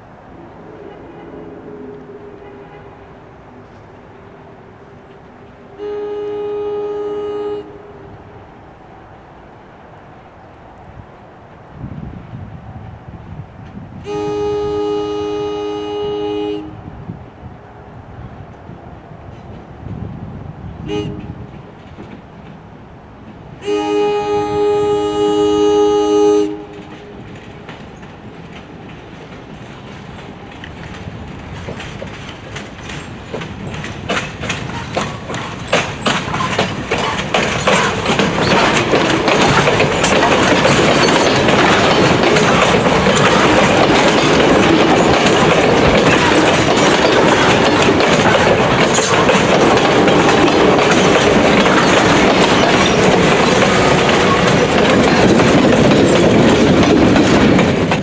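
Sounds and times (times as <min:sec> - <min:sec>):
train air horn: 0:00.3 - 0:08.5, 0:14.0 - 0:16.9, 0:20.8 - 0:21.4, 0:23.6 - 0:27.4, 0:46.0 - 0:55.3
train wheels clicking over rail joints: 0:21.1 - 0:23.6, 0:26.6 - 0:58.0.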